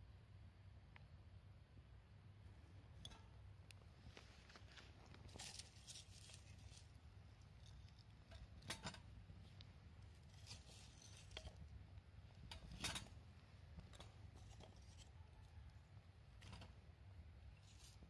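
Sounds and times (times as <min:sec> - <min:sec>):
low steady hum: 0:00.0 - 0:18.0
small objects clicking and rustling: 0:04.1 - 0:11.7.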